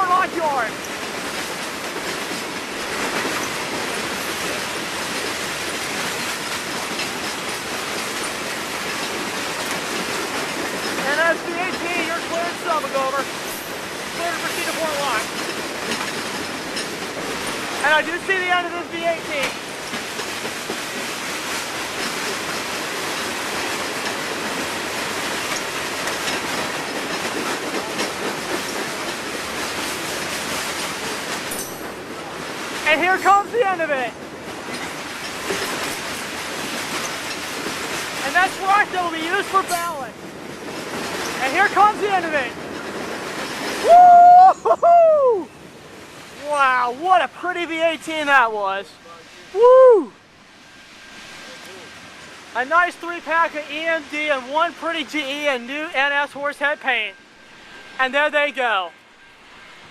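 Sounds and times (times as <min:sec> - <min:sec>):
train wheels rushing on rails: 0:00.0 - 0:59.9.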